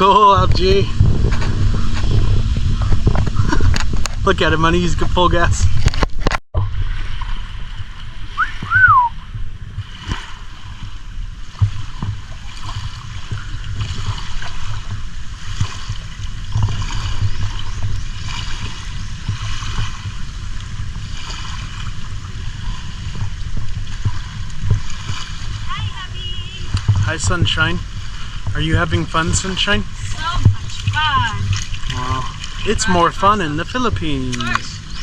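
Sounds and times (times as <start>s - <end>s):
wind buffeting: 0.0s - 35.0s
whistle-like squeak: 8.4s - 9.2s.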